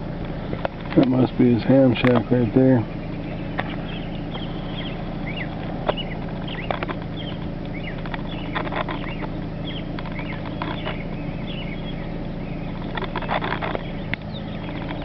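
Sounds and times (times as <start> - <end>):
low engine hum: 0.0 - 15.0
small birds chirping: 0.0 - 15.0
sharp clicks: 1.9 - 2.4, 3.5 - 11.6, 12.7 - 15.0.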